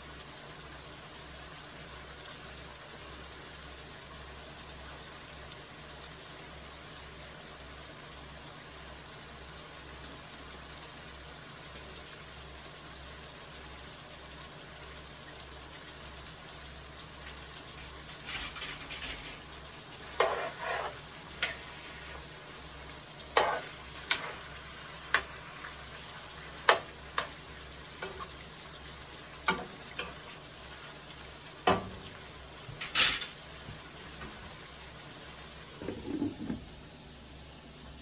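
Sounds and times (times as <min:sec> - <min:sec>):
low sizzle: 0:00.0 - 0:38.0
spoon scraping a pot: 0:17.8 - 0:22.2, 0:23.3 - 0:24.5.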